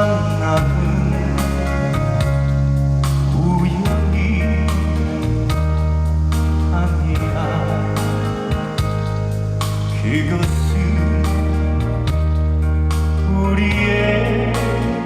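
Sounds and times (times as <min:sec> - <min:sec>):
man singing: 0:00.0 - 0:05.8, 0:06.5 - 0:12.4, 0:13.2 - 0:15.0
deep bass line: 0:00.0 - 0:15.0
live band playing a slow ballad: 0:00.0 - 0:15.0.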